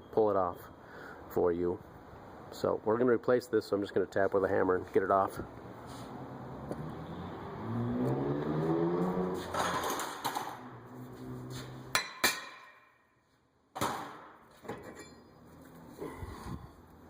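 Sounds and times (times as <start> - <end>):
hammer hitting metal brake rotor: 12.0 - 12.8.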